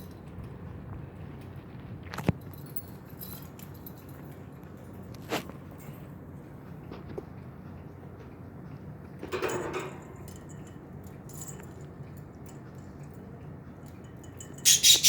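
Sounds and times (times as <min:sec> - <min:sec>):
light clicks and jingles: 0:01.2 - 0:14.7
cage rattle: 0:09.2 - 0:11.6, 0:13.9 - 0:15.0.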